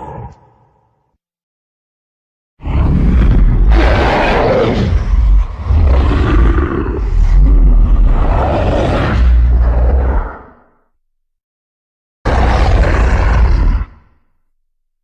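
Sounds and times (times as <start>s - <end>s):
monster roar: 0.0s - 0.9s, 2.6s - 10.6s, 12.3s - 14.2s.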